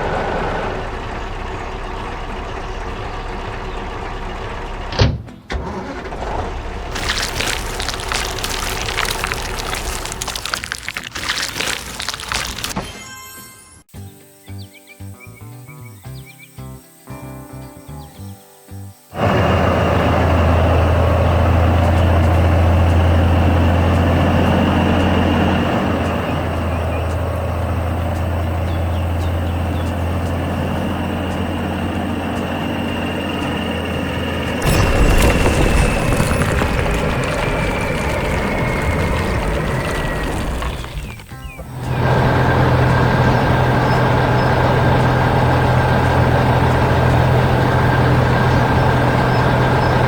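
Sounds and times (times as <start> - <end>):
construction vehicle engine running: 0.0 - 4.9, 19.2 - 50.0.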